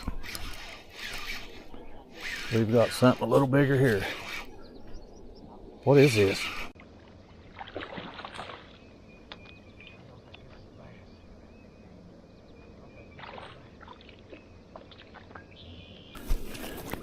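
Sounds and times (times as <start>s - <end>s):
water splashing and sloshing: 6.7s - 9.5s, 13.1s - 15.6s.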